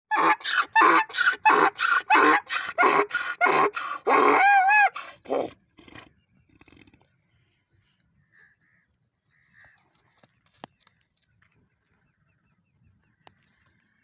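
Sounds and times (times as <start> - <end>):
donkey braying: 0.1 - 6.1.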